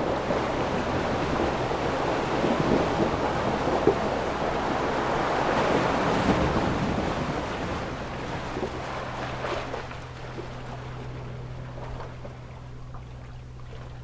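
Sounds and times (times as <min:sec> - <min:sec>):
ocean waves washing onto shore: 0:00.0 - 0:10.0.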